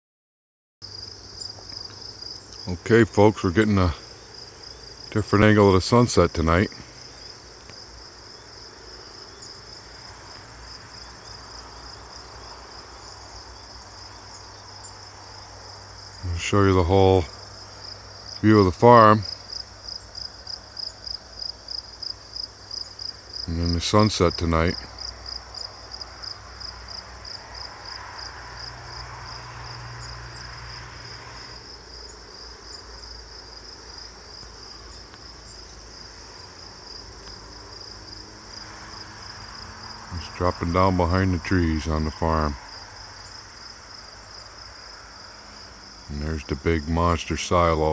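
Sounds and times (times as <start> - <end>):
crickets chirping: 0.8 - 47.9.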